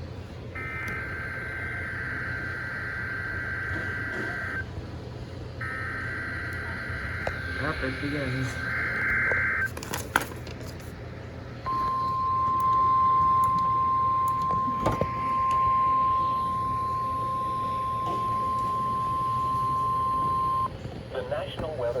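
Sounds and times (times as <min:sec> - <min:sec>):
high steady alarm beep: 0:00.6 - 0:04.7, 0:05.6 - 0:09.7, 0:11.7 - 0:20.7.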